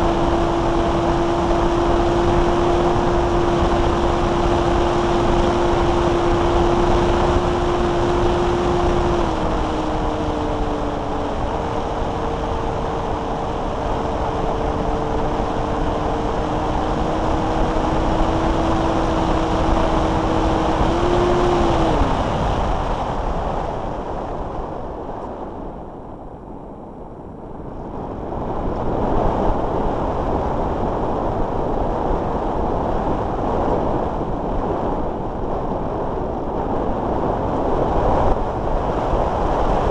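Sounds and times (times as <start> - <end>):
electric motor whine: 0.0 - 23.0.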